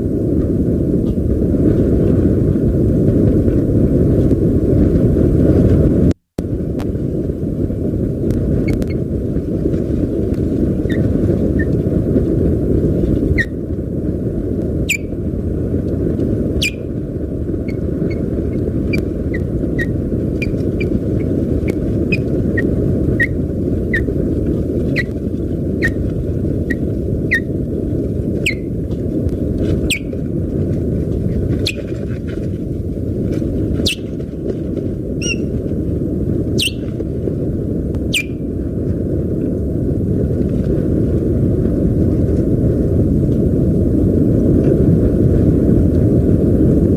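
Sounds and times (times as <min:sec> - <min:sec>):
steady low rumble: 0:00.0 - 0:46.9
osprey alarm calls: 0:10.8 - 0:11.0, 0:13.3 - 0:13.6, 0:14.9 - 0:15.1, 0:16.6 - 0:16.9, 0:17.6 - 0:27.6, 0:28.4 - 0:28.8, 0:29.8 - 0:30.2, 0:31.6 - 0:31.9, 0:33.8 - 0:34.1, 0:35.2 - 0:35.5, 0:36.6 - 0:36.9, 0:38.1 - 0:38.4.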